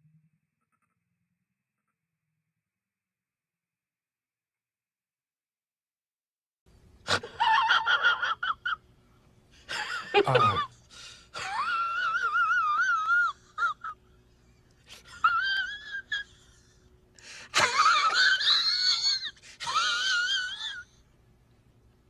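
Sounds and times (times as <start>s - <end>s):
high-pitched wavering wailing cries: 11.4s - 14.0s, 15.1s - 16.6s, 17.6s - 21.0s.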